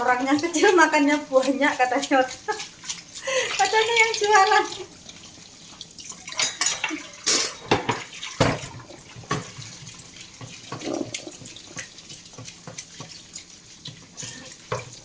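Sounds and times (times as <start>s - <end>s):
water splashing in a sink: 0.0s - 15.0s
objects knocking and clattering: 6.3s - 9.6s.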